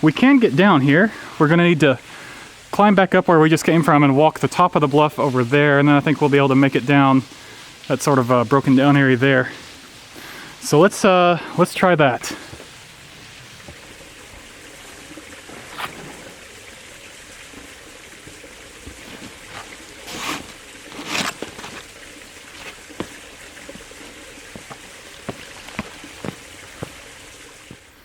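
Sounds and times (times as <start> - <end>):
creek water trickling over rock: 0.0 - 28.0
footsteps on rock and leaves: 12.3 - 12.8, 15.4 - 16.4, 17.5 - 27.9.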